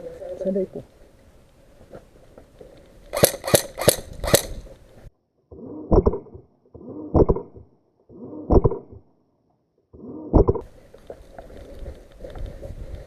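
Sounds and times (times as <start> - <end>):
airsoft gun shots: 3.1 - 4.7.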